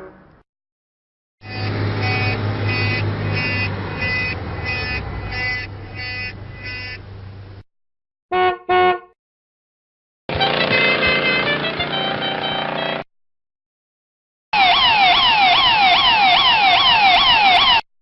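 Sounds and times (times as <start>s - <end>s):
quick car horn toots: 1.4s - 7.0s, 8.3s - 9.2s, 10.3s - 13.0s
pulsing horn beeping: 1.4s - 7.1s, 8.3s - 9.1s, 10.3s - 13.0s
steady low rumble: 1.5s - 7.6s.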